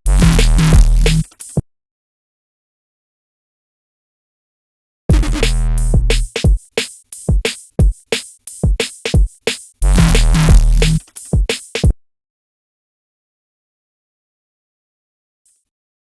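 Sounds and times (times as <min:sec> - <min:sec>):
held low bass notes: 0:00.0 - 0:01.2, 0:05.1 - 0:06.3, 0:09.8 - 0:11.0
synth bass stabs with white noise: 0:00.0 - 0:01.2, 0:05.1 - 0:06.4, 0:09.8 - 0:11.0.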